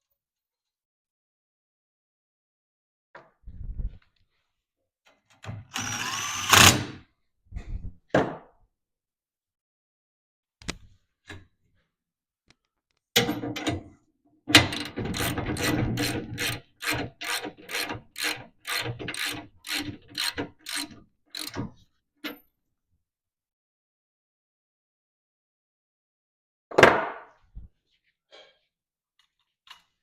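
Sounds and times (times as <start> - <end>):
ratchet wrench clicking: 14.8 - 21.6.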